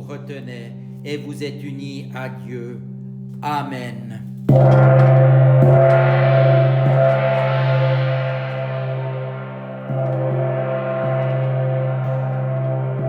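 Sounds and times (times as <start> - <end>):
soft gong restrikes: 4.3 - 13.0
gong ringing: 4.5 - 13.0.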